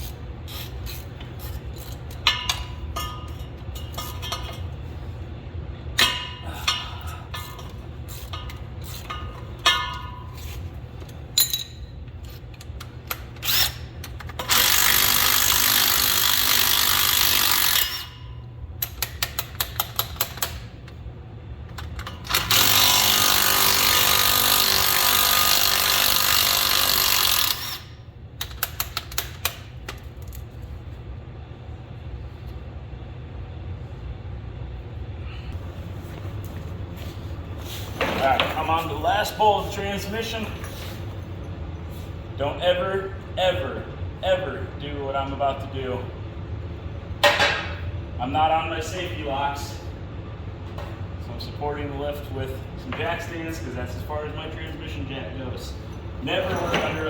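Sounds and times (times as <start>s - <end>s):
metal tools clinking: 6.0s - 12.6s, 55.9s - 57.0s
impact wrench running: 12.8s - 18.2s, 21.8s - 29.6s.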